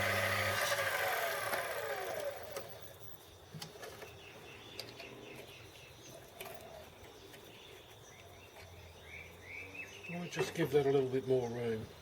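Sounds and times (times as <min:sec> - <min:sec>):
lathe motor whine: 0:00.0 - 0:02.8
faint bird chirping: 0:02.4 - 0:12.0.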